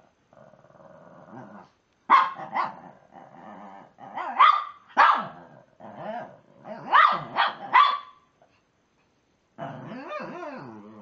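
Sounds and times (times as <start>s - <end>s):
dog barking: 2.1s - 2.8s, 4.2s - 5.4s, 6.8s - 8.2s
dog grumbling: 9.6s - 11.0s
dog whining and moaning: 9.8s - 11.0s.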